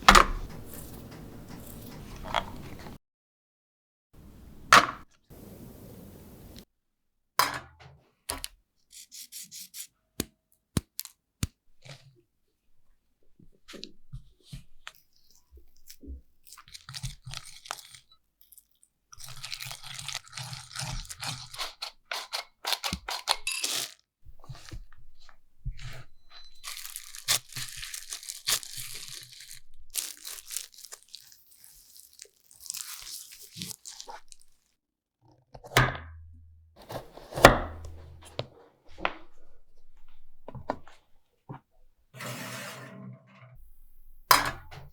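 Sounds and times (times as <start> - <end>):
scraping or rustling: 0.0 - 3.0, 19.2 - 34.6, 36.8 - 41.1.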